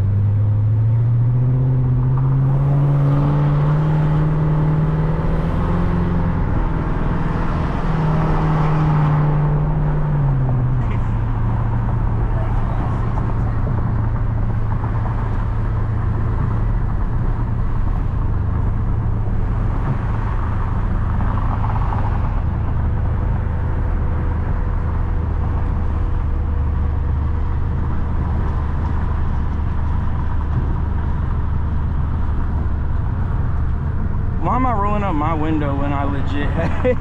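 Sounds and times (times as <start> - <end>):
car engine droning inside car: 0.0 - 37.0.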